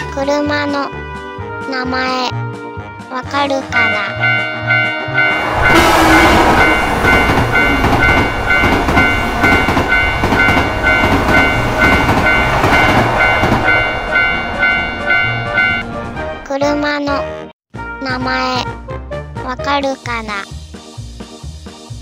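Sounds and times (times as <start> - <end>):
level crossing warning bell: 3.6 - 15.9
train passing with wheel clatter: 3.7 - 16.4.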